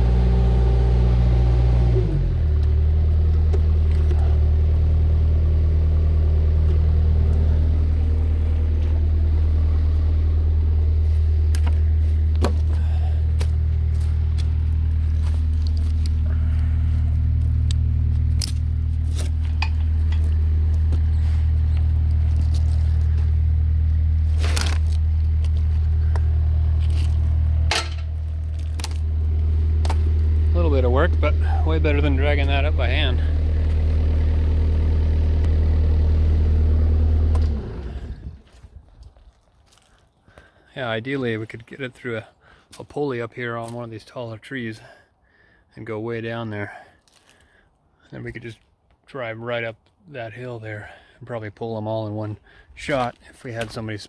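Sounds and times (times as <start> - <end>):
diesel engine running: 0.0 - 39.1
metallic clinks and scrapes: 17.2 - 23.4, 26.8 - 29.1.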